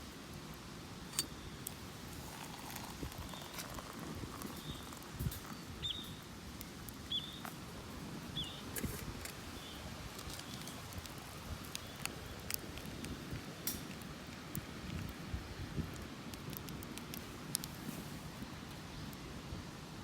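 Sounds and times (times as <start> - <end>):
small clicks and crackles: 1.1 - 7.6, 8.7 - 18.8
bird chirping: 3.2 - 6.2, 7.1 - 7.5, 8.4 - 8.7.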